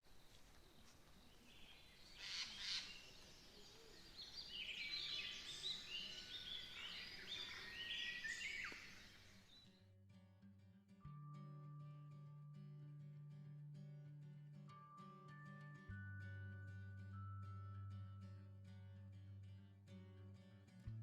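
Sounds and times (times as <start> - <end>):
faint steady hiss: 0.0 - 9.6
songbird chirping: 0.0 - 9.7.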